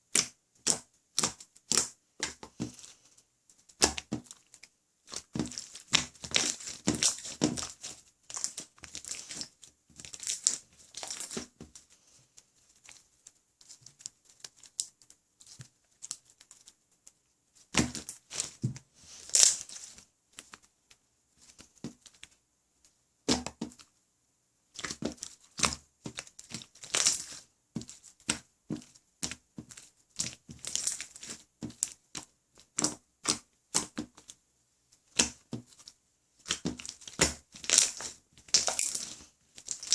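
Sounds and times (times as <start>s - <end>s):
slime squeezed with sticky pops: 3.7s - 11.6s, 24.8s - 34.2s, 36.4s - 39.9s.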